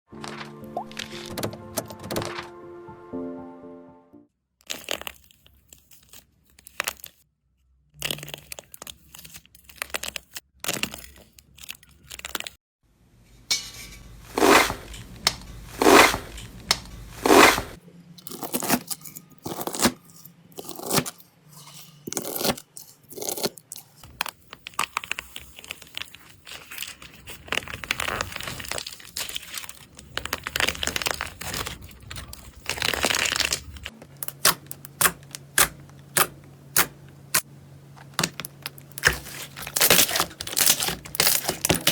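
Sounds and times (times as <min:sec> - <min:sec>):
slime crackling and popping: 0:24.2 - 0:36.9, 0:38.3 - 0:41.9.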